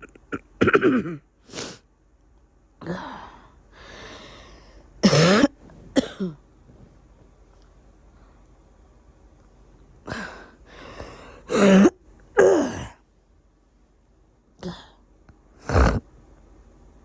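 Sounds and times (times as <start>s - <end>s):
person coughing: 0.0s - 1.2s, 5.0s - 6.4s, 11.5s - 13.0s
breath: 3.0s - 4.9s, 10.1s - 11.5s.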